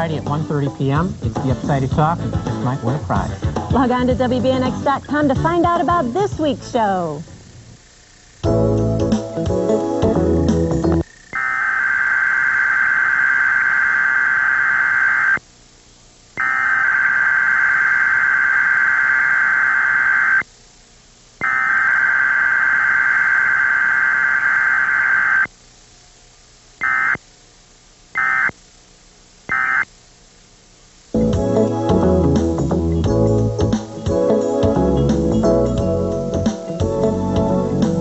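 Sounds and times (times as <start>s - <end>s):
music: 0.0s - 6.8s, 8.4s - 11.0s, 31.2s - 38.0s
emergency alert data tones: 11.0s - 15.4s, 16.4s - 20.4s, 21.4s - 25.5s, 26.8s - 27.2s, 28.2s - 28.6s, 29.5s - 29.9s.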